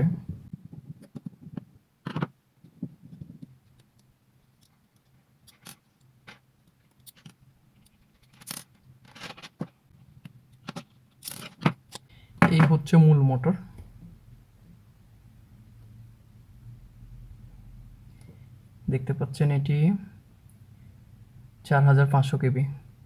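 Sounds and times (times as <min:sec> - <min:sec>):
small plastic and metal parts clicking: 0:03.1 - 0:09.7, 0:10.5 - 0:12.1.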